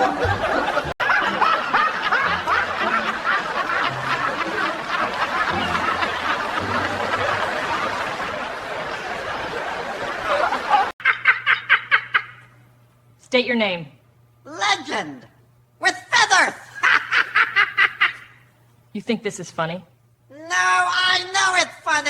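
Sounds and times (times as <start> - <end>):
group of people laughing: 0.0 - 12.5, 16.7 - 18.4
single person laughing ha-ha-ha: 0.0 - 12.5, 16.8 - 18.4.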